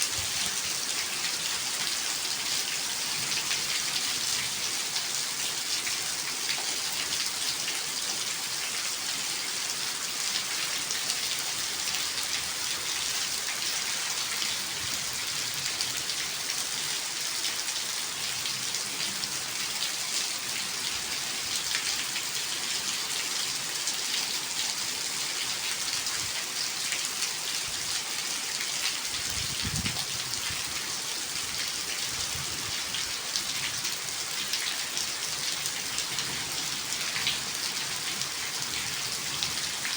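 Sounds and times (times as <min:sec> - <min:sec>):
rain pattering: 0:25.5 - 0:39.9.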